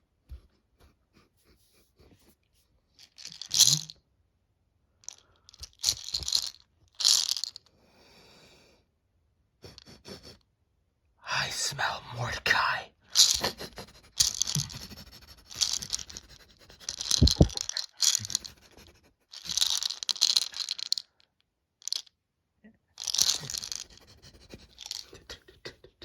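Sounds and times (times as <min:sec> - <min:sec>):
person sniffing loudly: 0:23.3 - 0:25.5.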